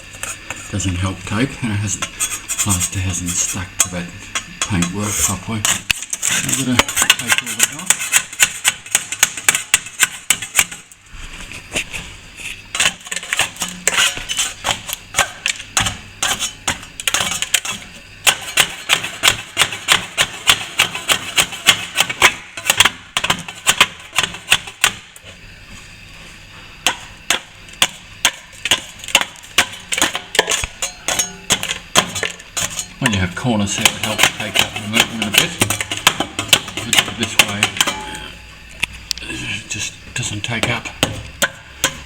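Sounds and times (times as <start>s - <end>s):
hand tool knocking off plaster: 27.8s - 38.1s.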